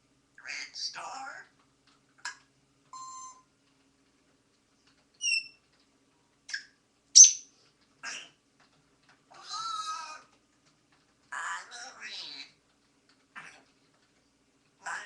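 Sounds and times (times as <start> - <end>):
parrot clicks and squeaks: 5.1 - 5.7, 6.5 - 8.2
parrot high squeak: 5.2 - 5.6.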